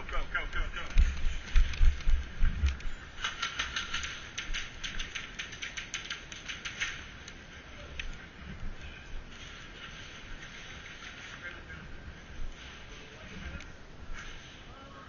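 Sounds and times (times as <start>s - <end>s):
sharp clicks and crackles: 0.1s - 8.7s, 9.3s - 11.8s.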